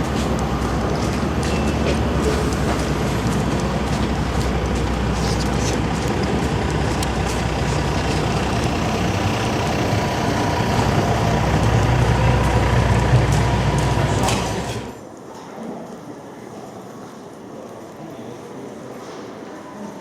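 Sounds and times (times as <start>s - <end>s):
vehicle rumble: 0.0s - 15.0s.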